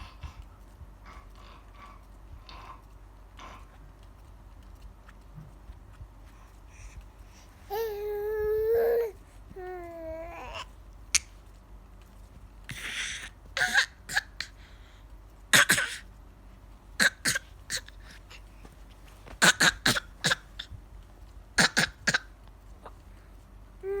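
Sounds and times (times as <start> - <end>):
baby fake coughing: 12.7 - 14.5, 15.5 - 16.0, 17.0 - 18.2, 19.3 - 20.8, 21.6 - 22.3.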